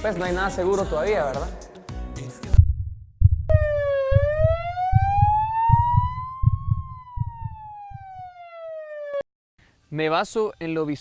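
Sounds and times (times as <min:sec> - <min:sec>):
low thumping pulses: 0:02.5 - 0:09.2
siren-like wailing tone: 0:03.5 - 0:09.2.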